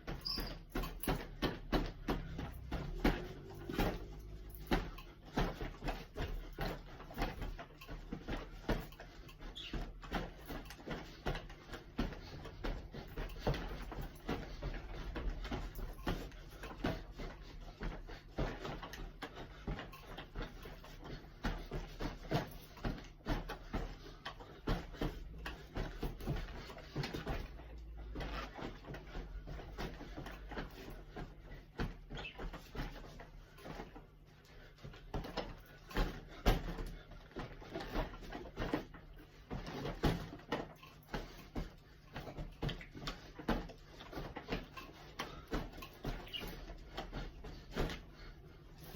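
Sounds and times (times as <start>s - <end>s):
boxing gloves thudding on padding: 0.0s - 33.1s.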